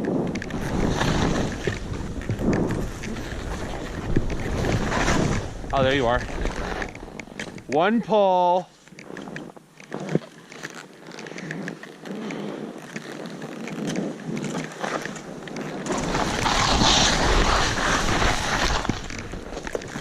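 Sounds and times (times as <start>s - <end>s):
wind buffeting microphone: 0.0s - 7.8s
skis scraping over snow: 0.0s - 20.0s.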